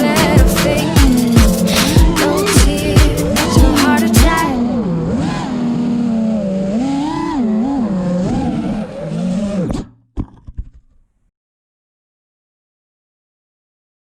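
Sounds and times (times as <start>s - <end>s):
drone motors whining: 0.0s - 10.0s.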